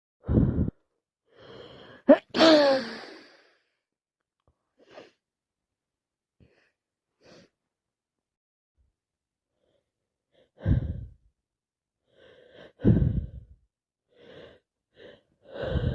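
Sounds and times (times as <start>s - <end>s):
person sneezing: 2.1s - 3.2s
breathy intake of breath: 10.6s - 11.2s, 12.1s - 15.9s.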